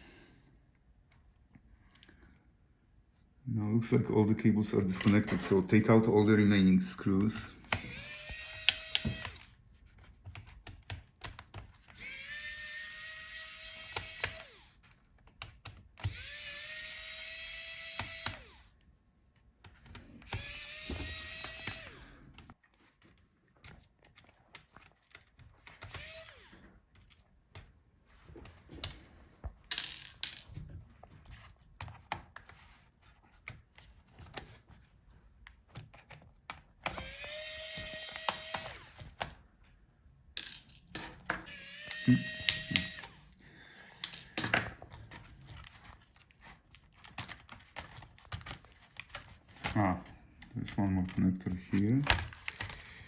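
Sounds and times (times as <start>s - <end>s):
electric screwdriver whining: 7.6s - 9.6s, 11.8s - 14.8s, 16.0s - 18.8s, 20.2s - 22.4s, 25.7s - 26.7s, 36.8s - 39.3s, 41.4s - 43.4s
screws and tools clicking: 7.7s - 9.5s, 11.8s - 14.7s, 16.0s - 18.7s, 20.2s - 22.0s, 25.7s - 27.2s, 36.8s - 39.3s, 40.4s - 43.3s.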